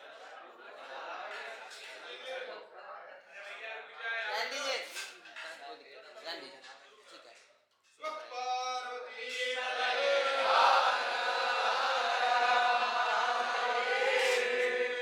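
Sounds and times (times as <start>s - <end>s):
children chanting: 9.4s - 15.0s.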